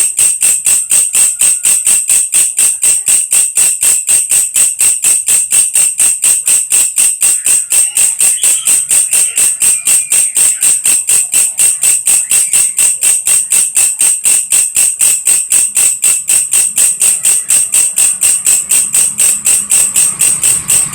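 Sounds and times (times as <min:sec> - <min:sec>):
insect rasping call: 0:06.7 - 0:20.9.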